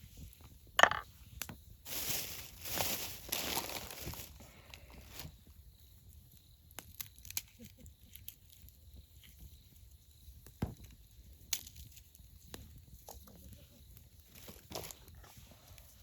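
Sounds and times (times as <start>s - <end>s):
objects knocking and clicking: 0.8s - 1.1s.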